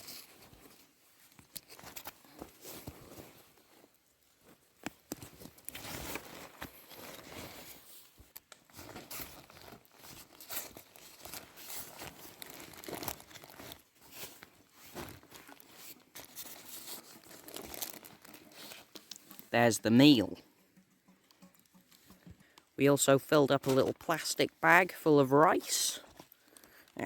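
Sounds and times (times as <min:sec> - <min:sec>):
plastic packaging rustling: 0:00.0 - 0:19.6.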